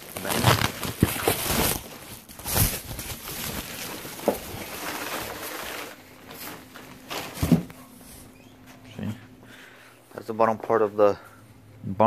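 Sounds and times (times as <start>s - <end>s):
plastic parts rustling and knocking: 0.0s - 7.8s.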